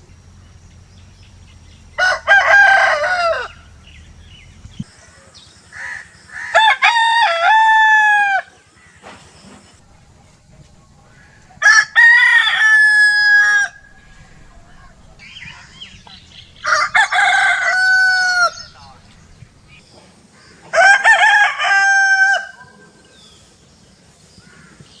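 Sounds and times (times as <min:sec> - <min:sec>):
rooster crowing: 0:01.9 - 0:04.0, 0:05.7 - 0:08.6, 0:11.1 - 0:19.0, 0:20.7 - 0:22.8.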